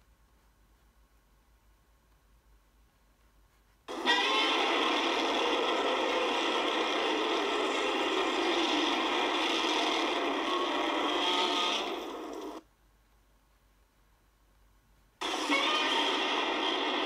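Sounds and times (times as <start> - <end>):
harsh rasping rush of noise: 3.9 - 12.6, 15.2 - 17.0.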